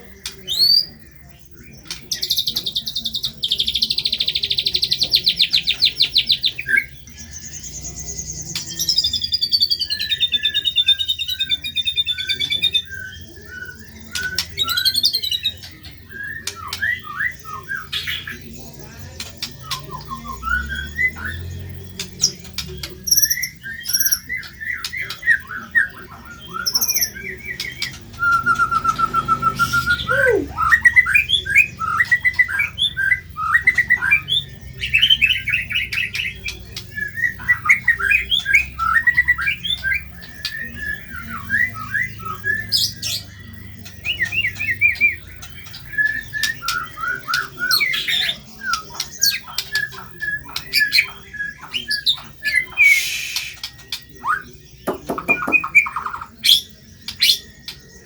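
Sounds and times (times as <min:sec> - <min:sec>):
bird singing chattering song: 0:00.0 - 0:58.0
trilled bird whistle: 0:19.4 - 0:57.8
high short bird pips: 0:52.8 - 0:53.8.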